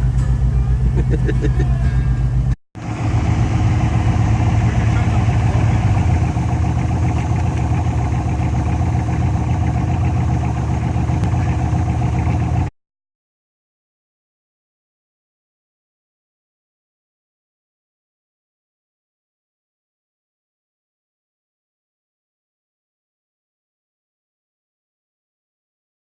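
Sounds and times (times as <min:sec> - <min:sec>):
truck engine running: 0:00.0 - 0:12.7.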